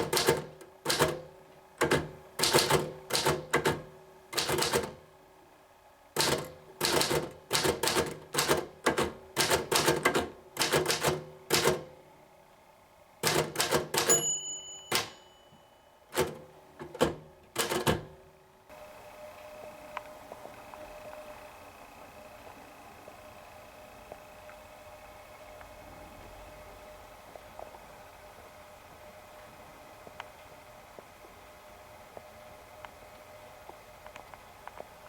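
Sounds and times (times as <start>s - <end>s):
typewriter keystrokes: 0.0s - 5.0s, 6.2s - 11.9s, 13.2s - 14.3s, 14.9s - 15.2s, 16.1s - 18.2s
typewriter bell ringing: 13.3s - 16.3s.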